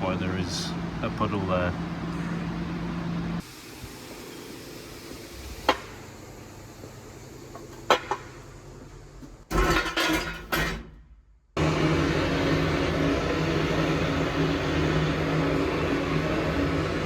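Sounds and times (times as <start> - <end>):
loud burst of noise: 11.6 - 17.0.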